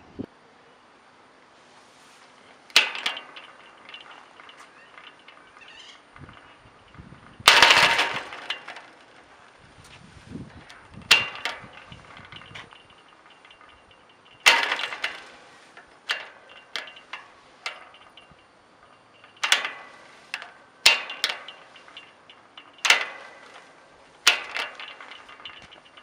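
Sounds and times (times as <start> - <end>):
metal gate slamming shut: 2.7 - 9.3, 10.6 - 26.0.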